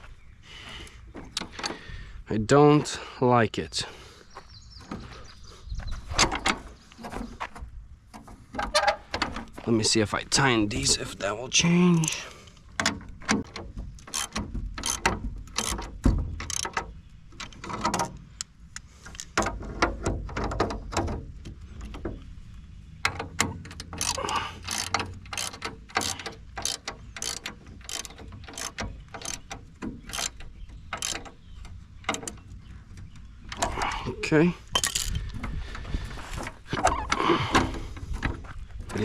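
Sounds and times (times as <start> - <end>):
ratchet wrench clicking: 14.0 - 16.8, 23.6 - 31.3.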